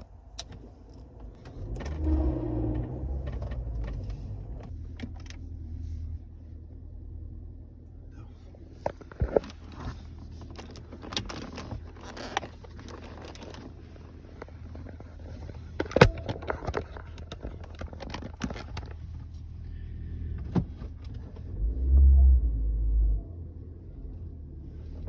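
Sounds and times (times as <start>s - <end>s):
car interior hum: 0.0s - 25.0s
loud low drone: 1.6s - 3.9s
clicks and knocks: 15.8s - 18.8s.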